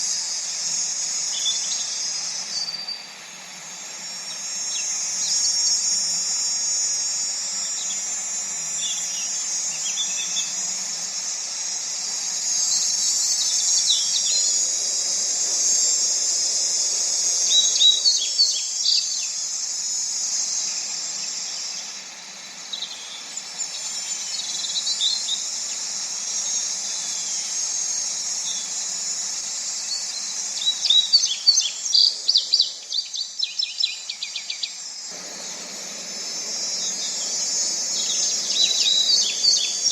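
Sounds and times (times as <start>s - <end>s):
high-pitched insect chorus: 0.0s - 39.9s
bird chirps: 29.8s - 39.9s.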